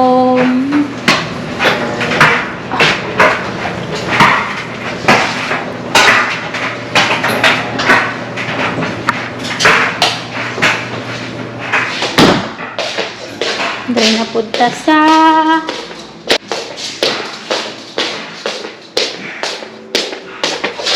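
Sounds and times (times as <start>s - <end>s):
low machine hum: 0.0s - 20.9s
sharp knocks and clatters: 1.0s - 14.8s.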